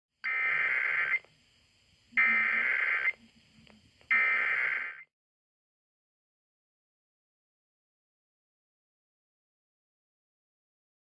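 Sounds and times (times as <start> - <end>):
digital data tones: 0.3 - 1.3, 2.1 - 3.4, 4.1 - 5.1.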